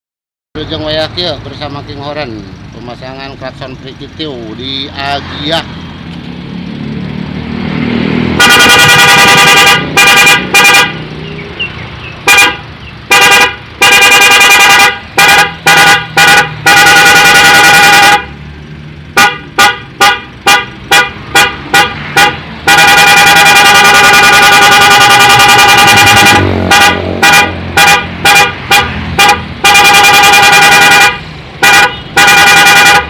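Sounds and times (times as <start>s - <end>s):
car horn blasts: 8.4s - 11.0s, 12.2s - 18.4s, 19.1s - 33.0s.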